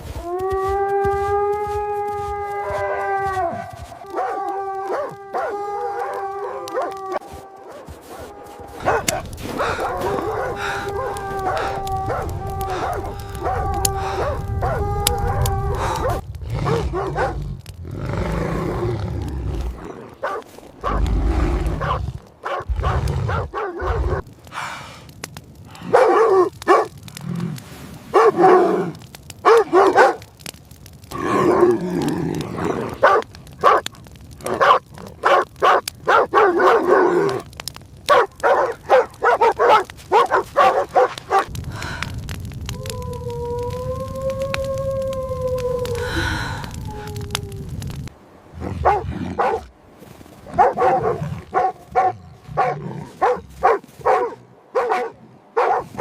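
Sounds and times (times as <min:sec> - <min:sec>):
dogs barking: 0:04.1 - 0:07.0, 0:07.6 - 0:15.4, 0:16.0 - 0:17.4, 0:20.2 - 0:21.1, 0:21.8 - 0:24.2, 0:25.9 - 0:27.0, 0:28.1 - 0:28.7, 0:29.4 - 0:30.3, 0:32.9 - 0:41.6, 0:48.8 - 0:49.7, 0:50.5 - 0:56.0.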